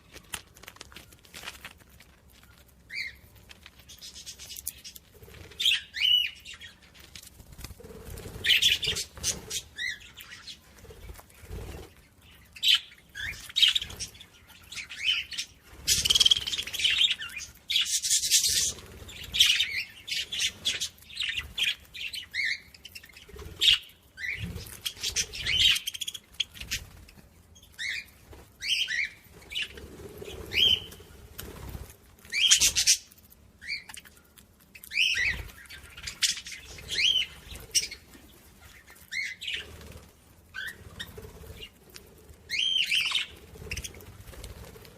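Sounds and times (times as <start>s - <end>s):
fluttery rustling: 0.0s - 5.6s
songbirds chirping: 0.0s - 44.9s.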